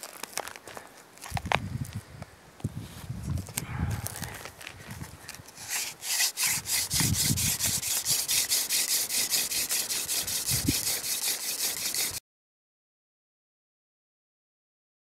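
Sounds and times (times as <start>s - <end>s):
hand drill hissing rub: 5.5s - 12.2s.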